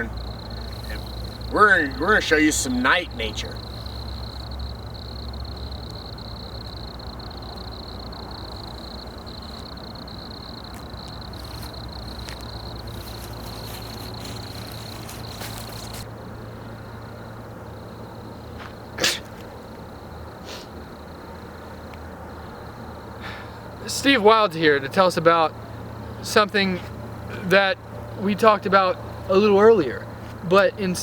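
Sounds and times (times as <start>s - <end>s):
insects trilling: 0.0s - 31.0s
clicks and rustles: 10.7s - 16.1s.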